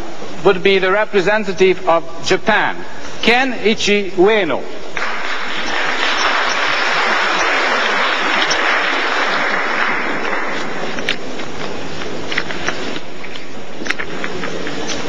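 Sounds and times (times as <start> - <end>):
audience applauding: 5.0 - 11.7.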